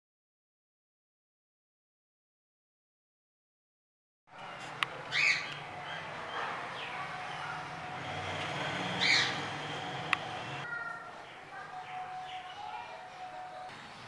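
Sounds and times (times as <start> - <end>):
steady background hum: 4.3 - 14.0
parrot squawking: 4.4 - 14.0.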